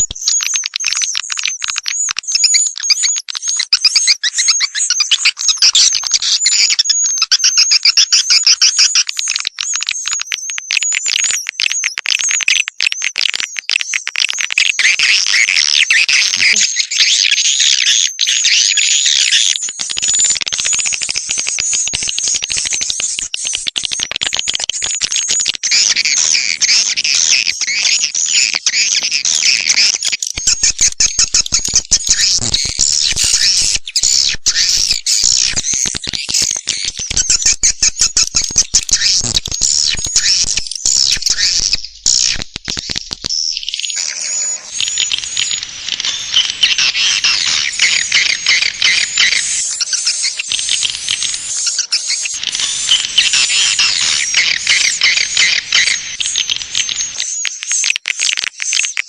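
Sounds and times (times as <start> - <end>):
swiftlets twittering: 18.4 - 57.8.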